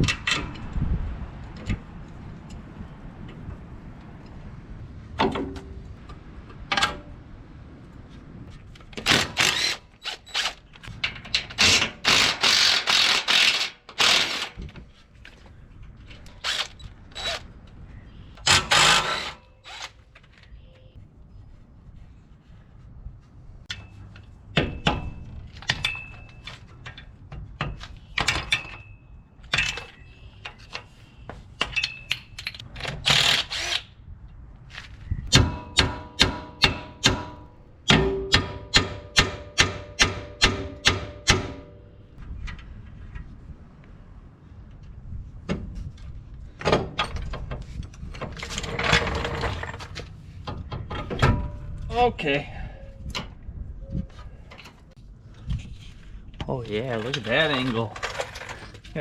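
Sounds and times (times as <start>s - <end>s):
metal clanks and knocks: 23.7s - 30.0s, 35.3s - 41.9s, 46.6s - 51.9s.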